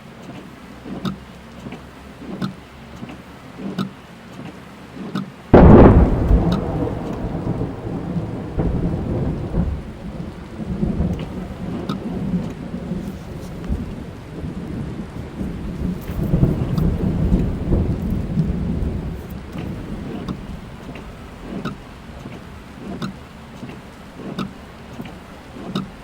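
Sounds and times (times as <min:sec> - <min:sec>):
rain falling on a car: 0:00.0 - 0:26.0
raindrops striking roof and glass: 0:00.0 - 0:26.0
thunder clap and rumble: 0:05.5 - 0:26.0.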